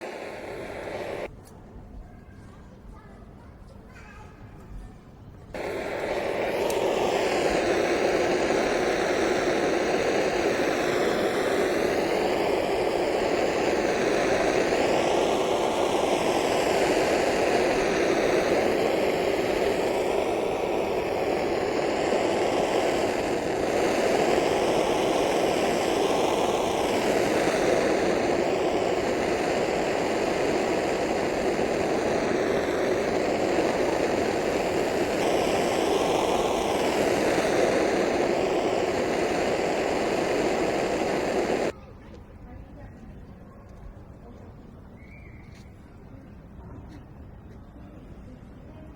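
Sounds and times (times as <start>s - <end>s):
torch flame hissing: 0.0s - 1.3s, 5.6s - 41.8s.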